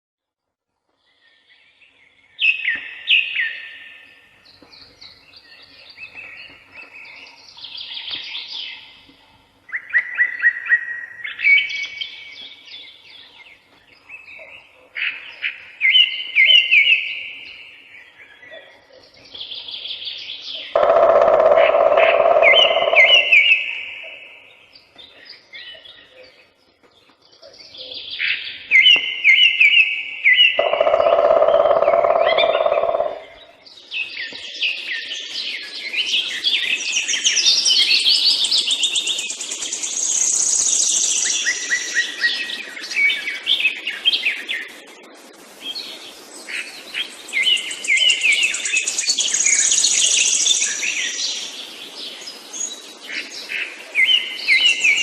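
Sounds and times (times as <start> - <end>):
songbirds chirping: 0.7 - 55.0
bird singing high trills: 20.3 - 24.5, 28.1 - 44.8.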